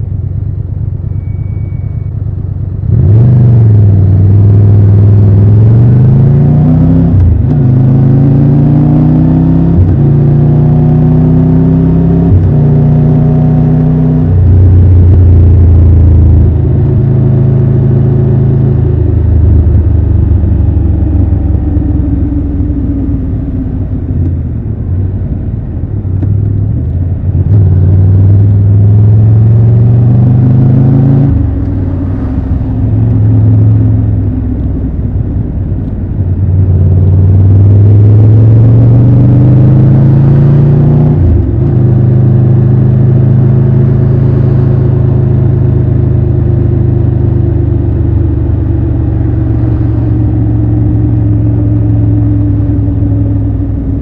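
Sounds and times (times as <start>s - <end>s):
motorcycle engine revving: 26.5s - 35.5s, 36.2s - 54.0s.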